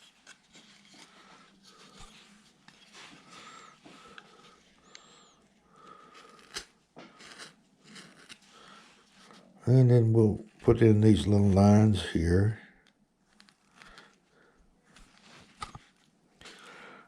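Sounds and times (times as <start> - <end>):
soft close breathing: 0.6 - 9.6, 13.6 - 15.6, 16.4 - 17.0
gouge scraping wood: 6.3 - 8.8.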